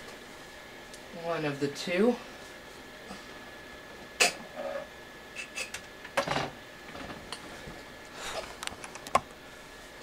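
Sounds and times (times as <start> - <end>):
rustling of computer parts: 8.3 - 9.3.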